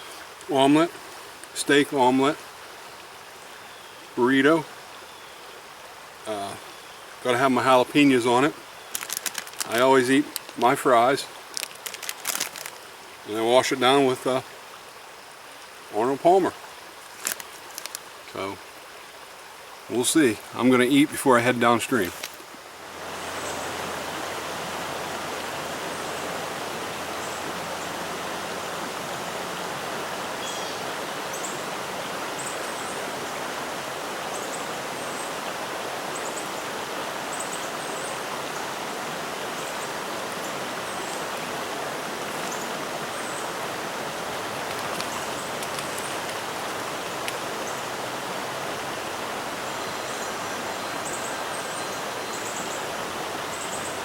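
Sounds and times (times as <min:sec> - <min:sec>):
stream water flowing: 0:00.0 - 0:54.0.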